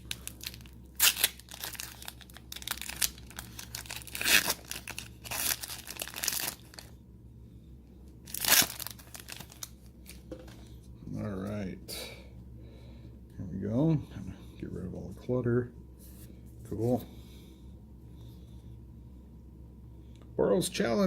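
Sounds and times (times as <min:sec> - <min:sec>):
foil wrapper tearing and crinkling: 0:00.0 - 0:06.9, 0:08.3 - 0:10.2.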